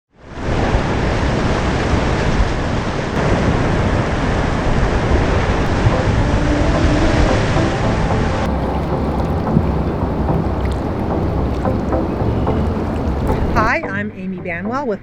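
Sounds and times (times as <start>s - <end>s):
rushing floodwater: 8.4s - 13.8s.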